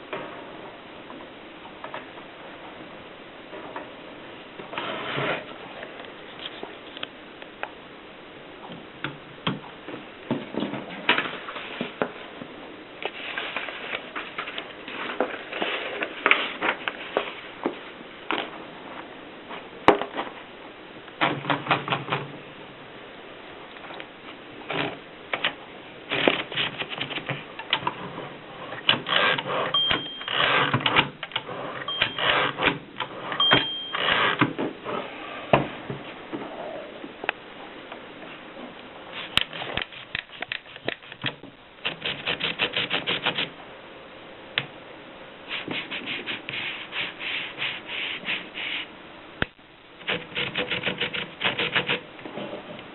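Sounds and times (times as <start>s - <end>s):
typewriter bell ringing: 29.8s - 30.7s, 31.9s - 32.5s, 33.4s - 34.3s.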